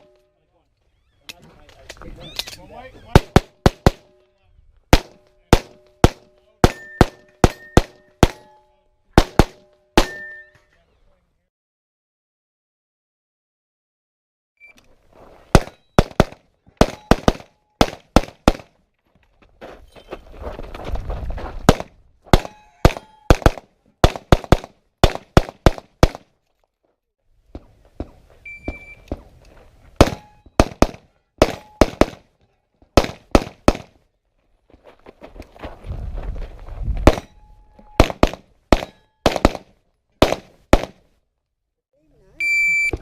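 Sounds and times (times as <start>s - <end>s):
rapid pistol shots: 3.2s - 4.1s, 4.9s - 8.5s, 9.2s - 10.2s, 15.6s - 18.7s, 21.7s - 26.2s, 30.0s - 32.2s, 33.0s - 33.9s, 38.0s - 41.0s
rustling noise: 14.9s - 15.6s, 19.0s - 21.7s, 34.4s - 37.1s.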